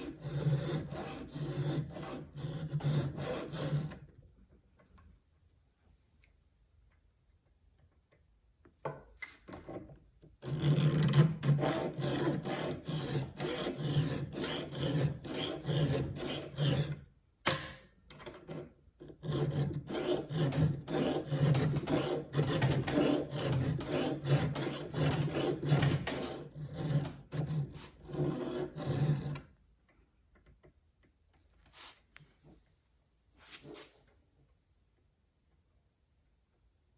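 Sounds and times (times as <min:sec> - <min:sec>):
file scraping on chainsaw chain: 0:00.0 - 0:04.0, 0:10.4 - 0:17.0, 0:18.3 - 0:29.4.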